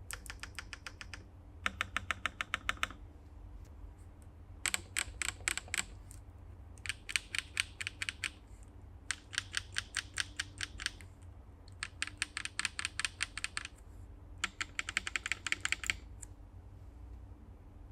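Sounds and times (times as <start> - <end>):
mechanical keyboard typing: 0.0 - 3.0, 4.6 - 6.0, 6.8 - 8.4, 9.1 - 11.0, 11.7 - 13.8, 14.4 - 16.3.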